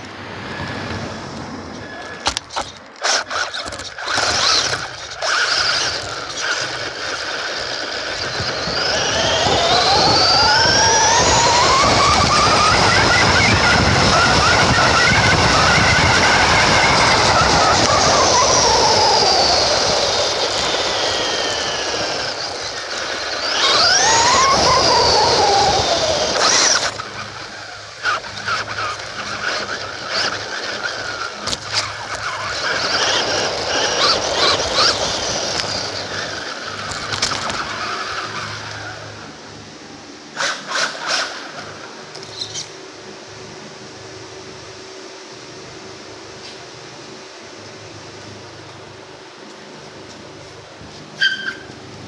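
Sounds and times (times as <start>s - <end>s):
tyre noise: 0.0s - 39.1s
rc car motor whining: 0.0s - 39.7s, 40.3s - 42.8s, 51.2s - 52.0s
wind rush: 8.6s - 27.1s.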